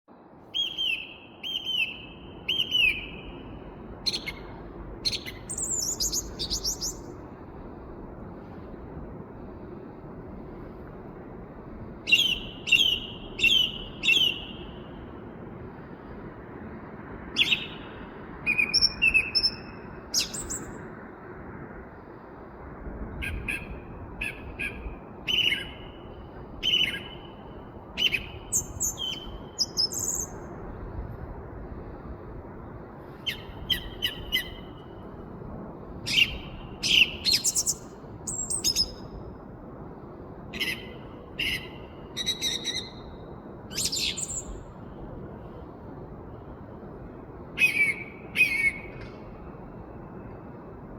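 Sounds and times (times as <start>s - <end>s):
song thrush singing: 0.5s - 7.2s, 12.1s - 15.0s, 17.4s - 20.8s, 23.2s - 30.5s, 33.2s - 35.1s, 36.1s - 39.2s, 40.6s - 44.8s, 47.6s - 49.0s.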